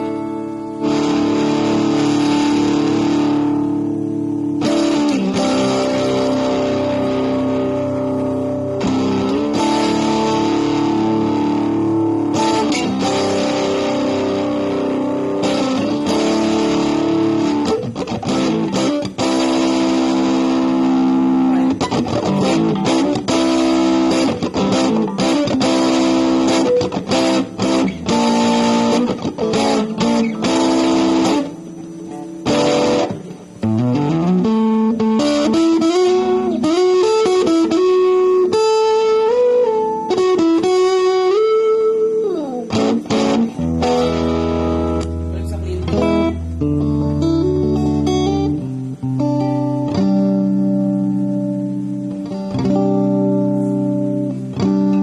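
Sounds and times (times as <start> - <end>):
electric guitar playing: 0.0 - 55.0.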